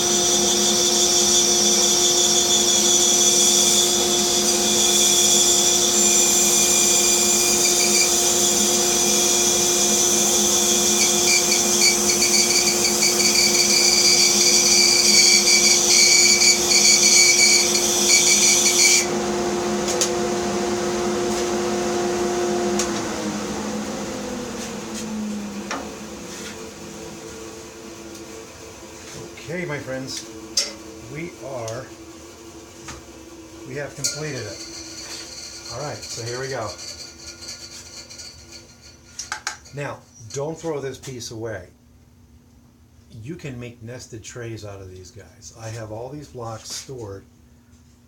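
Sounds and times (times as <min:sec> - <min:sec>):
saw blade cutting wood: 0:00.0 - 0:08.6, 0:09.2 - 0:19.1, 0:33.7 - 0:39.8
bandsaw motor hum: 0:00.0 - 0:39.7.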